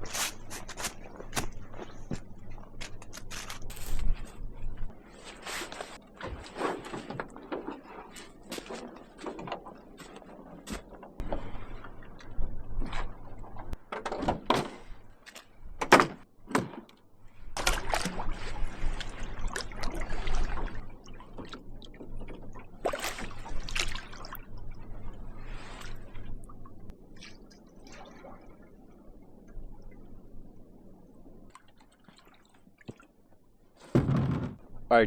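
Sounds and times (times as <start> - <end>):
paddle strokes splashing in water: 4.9 - 13.8, 17.4 - 24.4.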